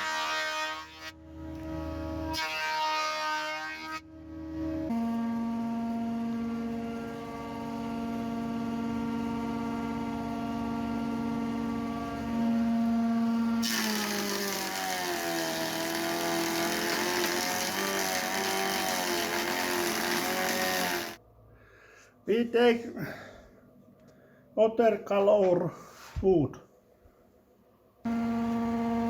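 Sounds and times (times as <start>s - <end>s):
power saw motor running: 13.6s - 21.2s, 28.1s - 29.0s
saw cutting wood hiss: 13.6s - 21.2s.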